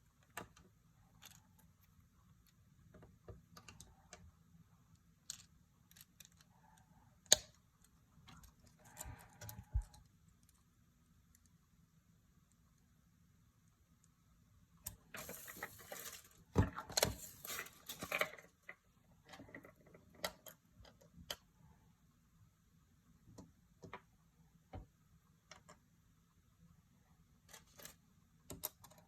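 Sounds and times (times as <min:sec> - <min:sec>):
plastic toy parts clicking: 0:05.2 - 0:06.5
packaging crinkling and rustling: 0:15.1 - 0:18.4.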